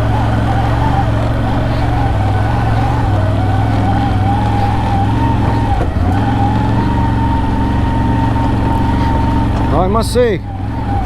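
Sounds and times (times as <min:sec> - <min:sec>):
atv engine running: 0:00.0 - 0:11.0
steady high whine: 0:00.0 - 0:11.0.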